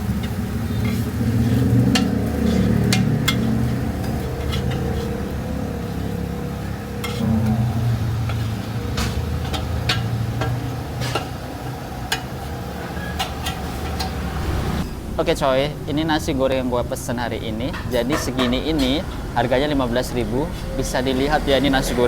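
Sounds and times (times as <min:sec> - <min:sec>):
metal spatula scraping a wok: 0:00.0 - 0:15.1, 0:17.7 - 0:19.4
food sizzling: 0:00.0 - 0:20.6
steady low rumble: 0:14.1 - 0:21.8.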